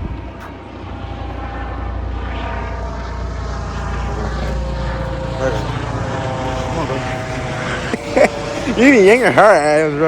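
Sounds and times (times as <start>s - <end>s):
wind rumble on microphone: 0.0s - 8.8s
steady engine drone: 0.0s - 10.0s.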